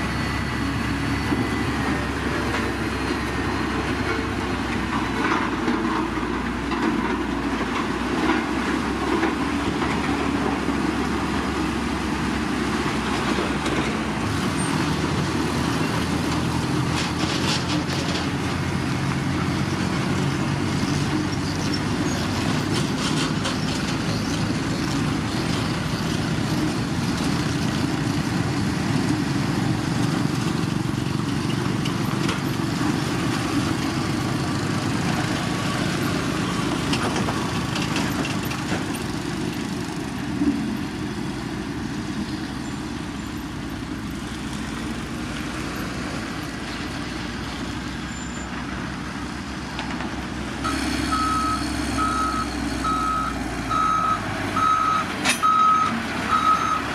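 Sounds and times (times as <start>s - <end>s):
heavy diesel machinery running: 0.0s - 56.9s
reversing alarm beeping: 50.6s - 56.9s.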